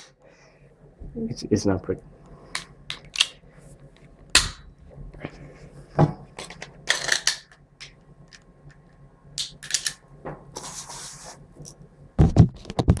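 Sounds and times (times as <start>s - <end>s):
pistol parts scraping and sliding: 9.4s - 10.0s.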